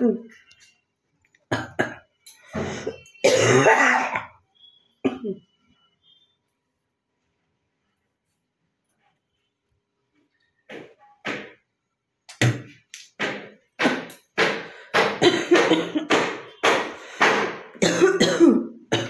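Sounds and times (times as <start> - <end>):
woman coughing: 2.6 - 4.4, 5.0 - 5.4, 15.2 - 16.1, 17.8 - 19.0.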